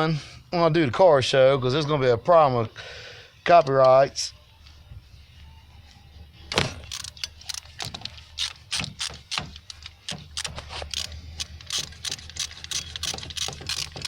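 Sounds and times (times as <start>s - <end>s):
hand tools clicking on metal: 6.8s - 14.0s.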